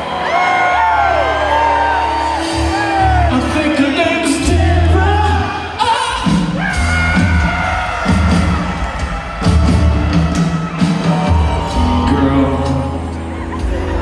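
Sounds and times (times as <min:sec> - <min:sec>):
bass line: 0:00.1 - 0:14.0
live band playing soul-funk: 0:02.2 - 0:14.0.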